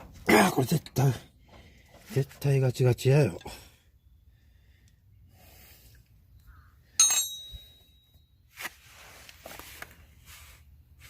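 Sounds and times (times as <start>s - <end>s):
metal clank ringing: 7.0s - 8.3s.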